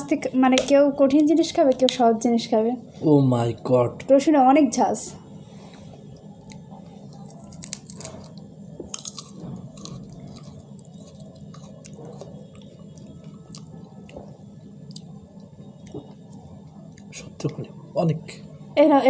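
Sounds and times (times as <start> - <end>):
person chewing garlic: 6.0 - 17.6.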